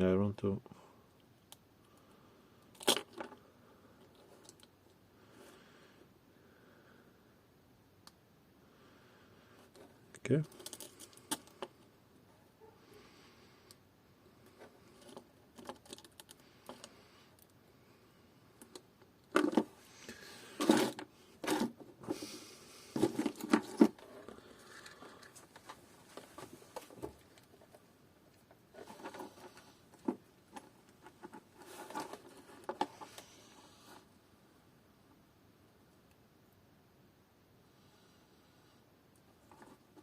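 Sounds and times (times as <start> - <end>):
small tools clicking and rattling: 10.4 - 11.7.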